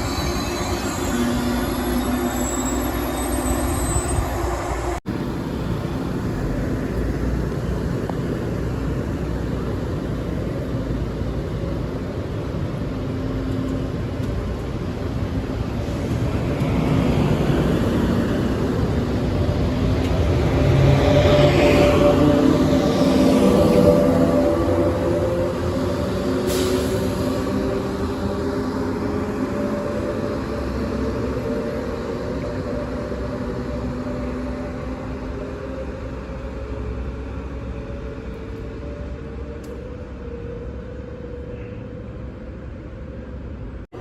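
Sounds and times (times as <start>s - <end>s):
high wheel squeal: 0.0s - 5.0s.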